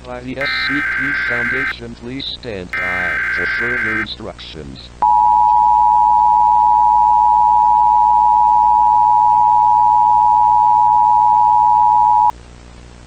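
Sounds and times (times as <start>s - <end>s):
two-tone alert signal: 0.4s - 1.7s, 2.8s - 4.1s.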